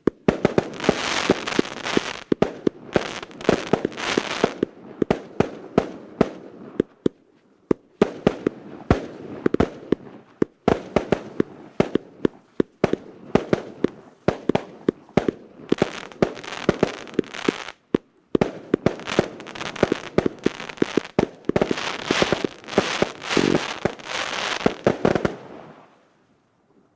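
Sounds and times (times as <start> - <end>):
firework crackling: 0.0 - 7.0, 8.0 - 25.9
firework shots and bursts: 0.0 - 7.2, 7.8 - 25.7.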